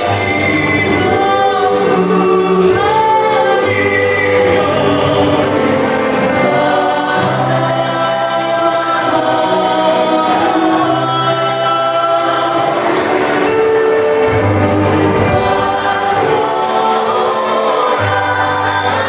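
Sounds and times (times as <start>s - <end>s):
vocal group singing in harmony: 0.0s - 19.0s.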